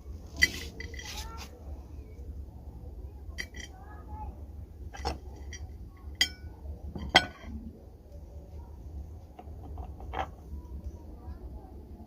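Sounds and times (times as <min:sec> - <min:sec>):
steady low hum: 0:00.0 - 0:12.0
hard objects clinking: 0:03.4 - 0:03.8.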